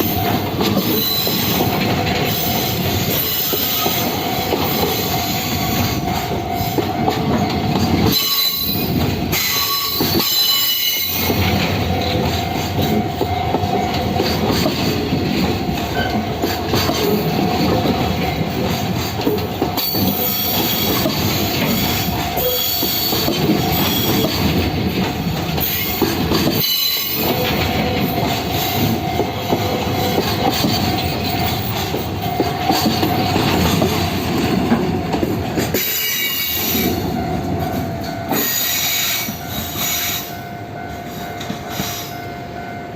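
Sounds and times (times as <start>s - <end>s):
wheels clattering over rail joints: 0.0s - 39.9s
freight train rolling past: 0.0s - 42.9s
high wheel squeal: 8.1s - 11.3s, 19.8s - 21.2s, 21.8s - 24.5s, 25.7s - 29.0s, 35.8s - 37.0s.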